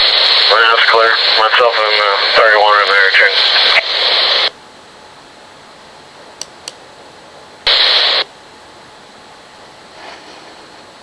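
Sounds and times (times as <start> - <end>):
radio static bursts: 0.0 - 4.5, 7.7 - 8.2.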